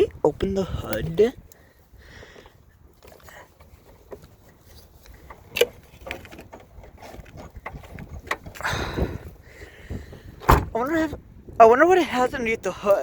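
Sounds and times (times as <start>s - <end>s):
rustling scrape: 3.0s - 8.5s.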